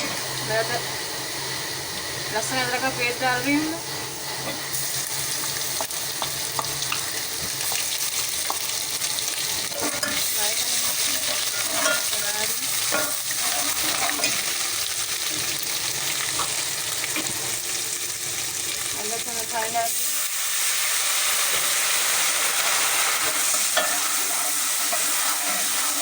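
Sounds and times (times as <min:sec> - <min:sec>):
onions sizzling in hot oil: 0:00.0 - 0:26.0
spoon scraping pot: 0:10.9 - 0:12.3.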